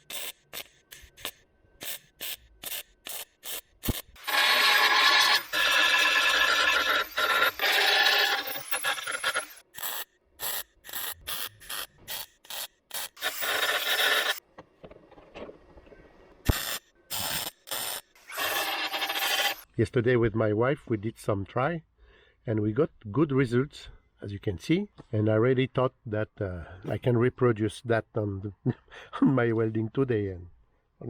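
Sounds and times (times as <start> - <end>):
welder arc crackling: 0.0 - 14.4, 16.5 - 19.6.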